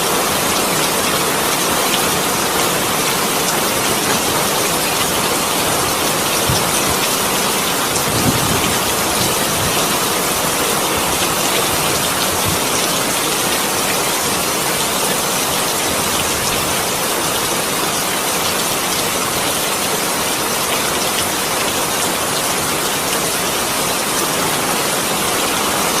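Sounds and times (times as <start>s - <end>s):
rushing water: 0.0s - 26.0s.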